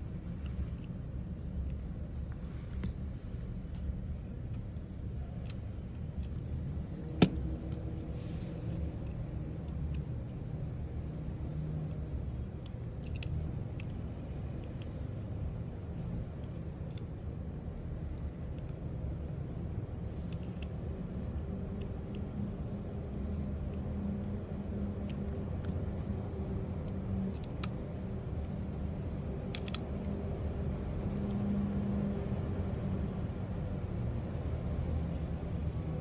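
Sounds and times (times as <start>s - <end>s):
light clicks: 0.2s - 10.9s, 11.8s - 19.2s, 20.1s - 30.3s.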